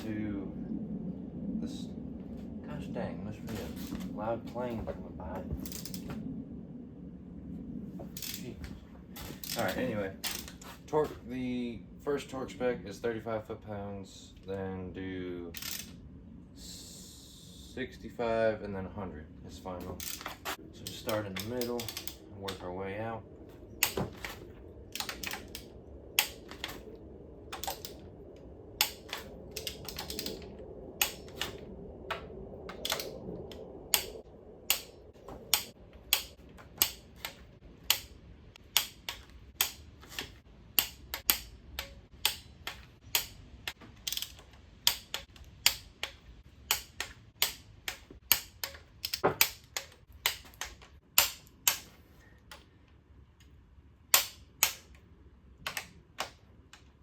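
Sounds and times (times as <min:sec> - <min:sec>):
faint low hum: 0:00.0 - 0:57.0
torque wrench ratchet clicking: 0:05.6 - 0:06.0, 0:15.6 - 0:15.9, 0:20.0 - 0:22.2, 0:24.9 - 0:26.8, 0:28.8 - 0:30.4, 0:31.0 - 0:31.6, 0:35.5 - 0:51.8.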